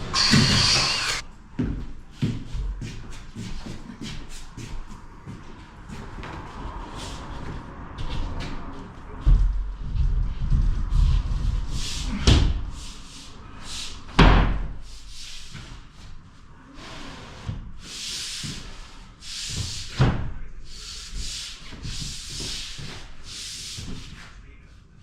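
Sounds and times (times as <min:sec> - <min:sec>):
hand saw rasping through board: 0:00.0 - 0:01.2.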